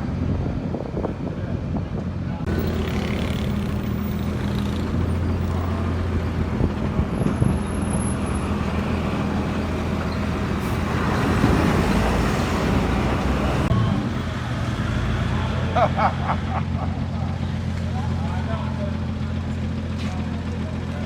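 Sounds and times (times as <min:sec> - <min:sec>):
tyre and wind noise: 0:00.0 - 0:13.7
car engine hum: 0:02.3 - 0:14.6.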